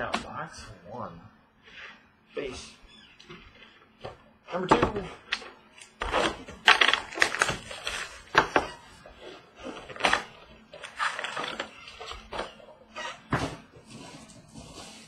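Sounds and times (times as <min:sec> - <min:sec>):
packaging crinkling and rustling: 0:05.3 - 0:12.6.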